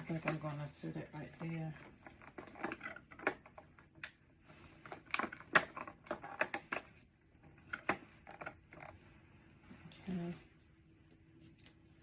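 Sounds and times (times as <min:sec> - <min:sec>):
items handled with clicks and taps: 0:00.0 - 0:09.0.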